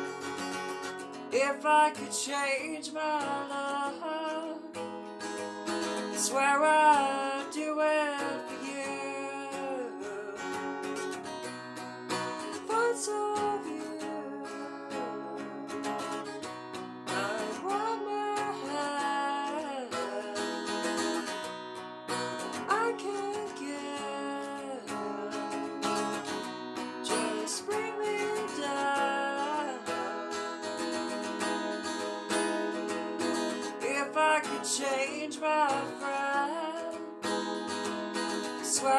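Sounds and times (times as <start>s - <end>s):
acoustic guitar strumming: 0.0s - 38.9s
person singing: 1.3s - 4.8s, 5.9s - 10.9s, 12.4s - 21.4s, 22.4s - 38.9s.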